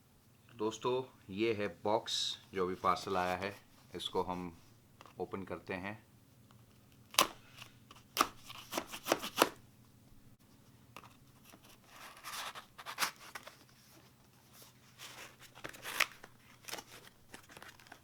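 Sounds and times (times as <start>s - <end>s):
cardboard handling: 2.7s - 4.4s, 7.1s - 9.6s, 11.0s - 18.0s
cardboard tearing: 7.1s - 9.6s, 11.7s - 13.8s, 15.0s - 18.0s
knife scraping cardboard: 8.2s - 9.6s, 11.4s - 17.1s.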